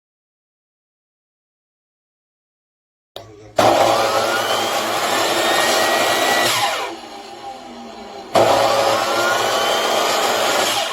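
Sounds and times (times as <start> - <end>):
miter saw motor whining: 3.6 - 10.9.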